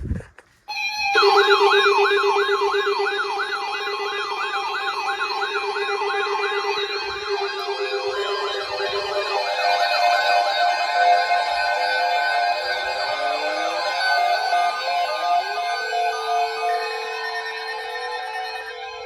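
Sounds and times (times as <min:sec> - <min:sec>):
swooping electronic alert tone: 0:01.0 - 0:11.0.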